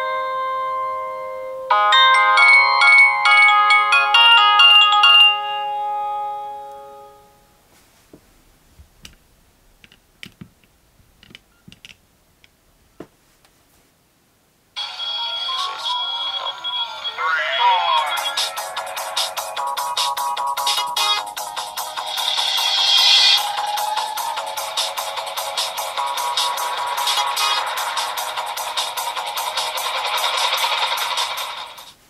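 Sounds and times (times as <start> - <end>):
polyphonic ringtone melody: 0.0 - 7.4, 14.8 - 31.9
dense electronic ringtone: 14.8 - 31.8.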